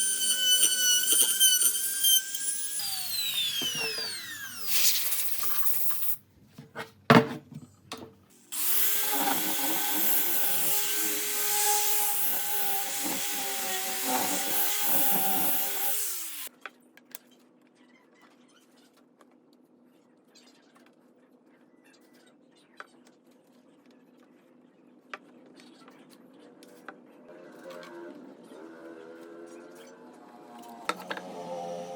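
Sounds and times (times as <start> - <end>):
power tool cutting wood: 0.0 - 6.2, 8.4 - 16.5, 27.4 - 31.9.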